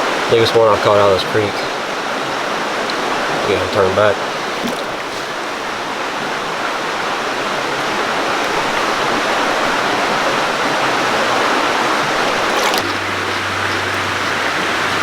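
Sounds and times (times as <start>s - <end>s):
creek water rushing: 0.0s - 15.0s.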